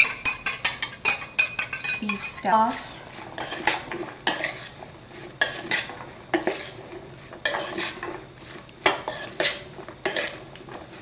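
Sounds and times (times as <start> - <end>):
metal utensils scraping a dish: 0.0 - 4.8, 5.4 - 11.0.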